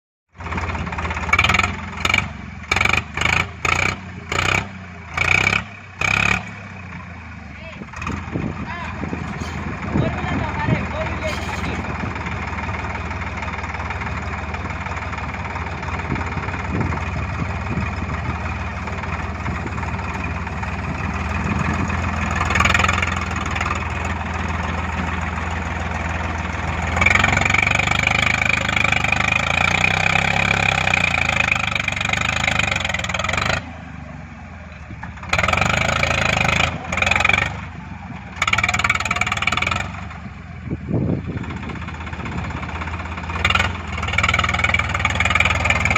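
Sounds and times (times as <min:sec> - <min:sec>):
diesel engine running: 0:00.3 - 0:45.9
high engine whine: 0:00.4 - 0:45.9.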